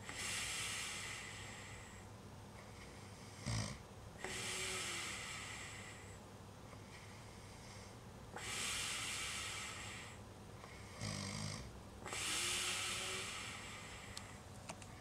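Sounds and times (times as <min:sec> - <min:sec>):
person snoring: 0:03.4 - 0:06.2, 0:10.8 - 0:14.1.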